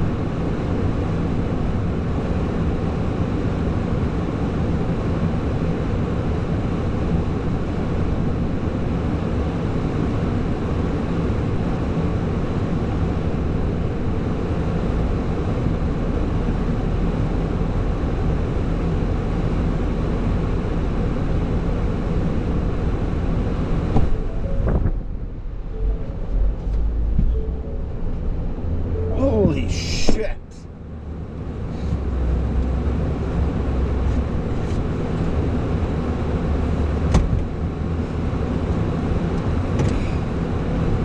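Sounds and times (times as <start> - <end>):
diesel truck engine rumbling: 13.2 - 41.0.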